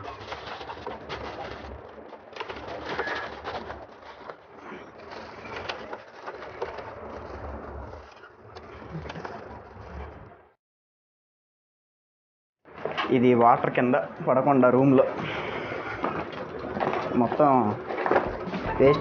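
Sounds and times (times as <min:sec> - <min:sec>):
pigeons cooing: 0:00.0 - 0:07.2
handling clicks and rustling: 0:00.0 - 0:10.4, 0:14.9 - 0:19.0.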